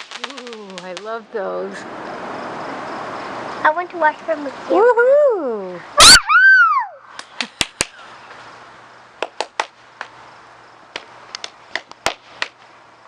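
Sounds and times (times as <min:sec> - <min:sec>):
fireworks popping and crackling: 0:00.0 - 0:01.8, 0:07.1 - 0:08.4, 0:09.2 - 0:10.2, 0:10.9 - 0:12.7
faint steady hiss: 0:00.0 - 0:06.0.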